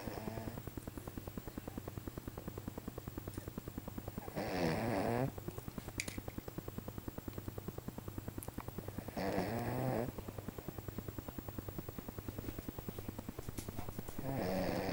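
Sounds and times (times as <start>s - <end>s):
fluttering snoring: 0.0s - 0.7s, 4.1s - 5.5s, 8.8s - 10.8s, 13.9s - 14.9s.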